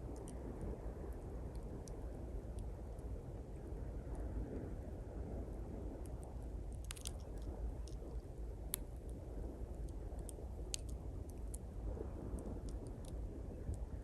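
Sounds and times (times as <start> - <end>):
campfire crackling and popping: 6.0 - 14.0.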